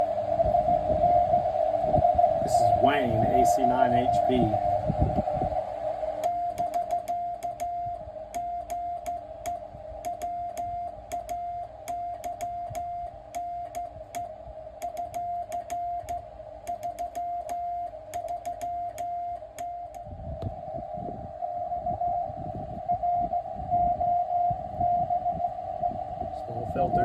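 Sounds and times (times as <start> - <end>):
radio band hiss: 2.4 - 4.7
morse code tone: 2.5 - 4.7, 6.2 - 20.0.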